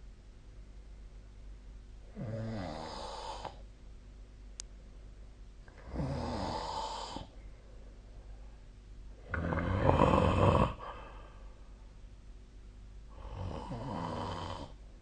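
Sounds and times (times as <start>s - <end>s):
person snoring: 2.1s - 3.6s, 5.8s - 7.3s, 9.2s - 11.4s, 13.1s - 14.8s
faint click: 4.6s - 4.8s.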